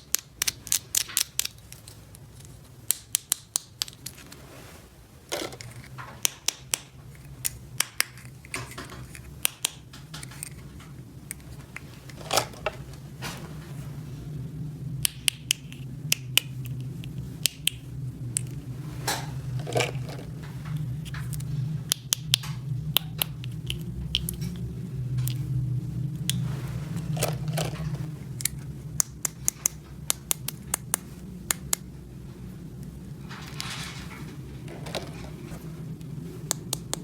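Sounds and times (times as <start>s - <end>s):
plastic toy pieces clicking: 0.0s - 4.2s, 5.3s - 10.7s
steady low hum: 0.0s - 37.0s.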